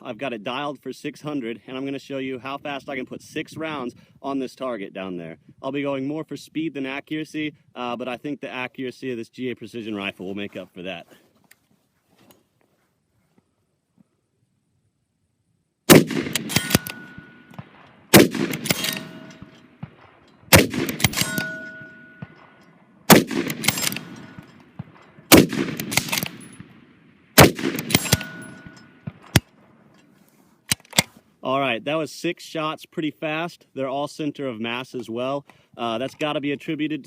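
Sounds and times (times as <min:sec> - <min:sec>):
rifle shots with echo: 0:15.9 - 0:29.9
rifle bolt clicks: 0:16.0 - 0:26.7, 0:27.4 - 0:30.1, 0:30.7 - 0:31.2.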